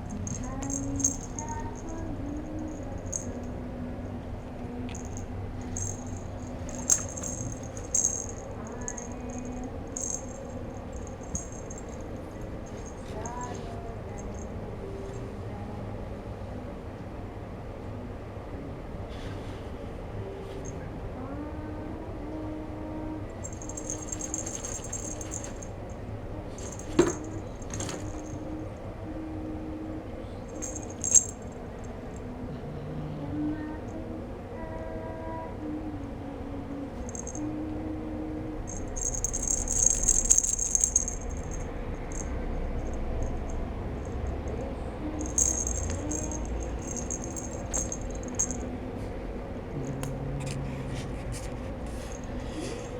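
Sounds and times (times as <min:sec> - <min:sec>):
small bell jingling: 0:00.0 - 0:03.6, 0:04.9 - 0:14.5, 0:23.4 - 0:25.9, 0:26.6 - 0:28.8, 0:30.5 - 0:32.2, 0:37.0 - 0:37.5, 0:38.7 - 0:48.6.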